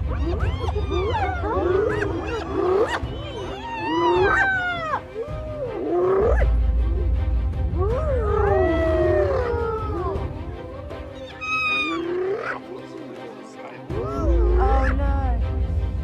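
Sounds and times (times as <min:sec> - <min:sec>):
hyenas squealing and whooping: 0:00.0 - 0:07.1, 0:07.8 - 0:12.8.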